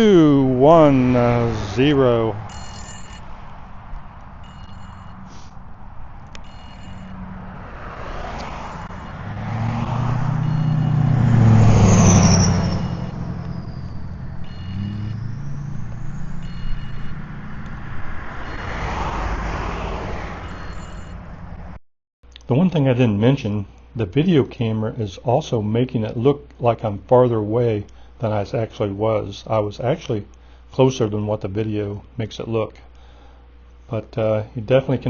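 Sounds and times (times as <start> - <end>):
vehicle passing quietly: 0.0 - 21.8
vehicle passing with high whine: 0.0 - 21.8.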